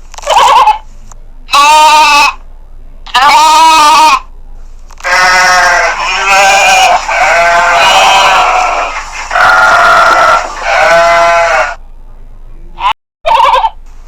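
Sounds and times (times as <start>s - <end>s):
livestock bleating: 1.5s - 2.4s, 3.1s - 4.2s, 5.0s - 11.8s.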